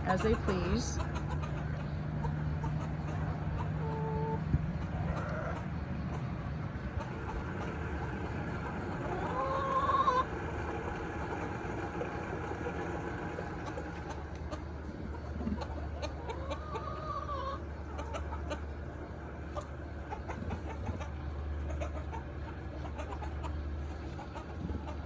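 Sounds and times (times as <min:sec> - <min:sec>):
steady low rumble: 0:00.0 - 0:16.5
chickens calling: 0:00.0 - 0:25.0.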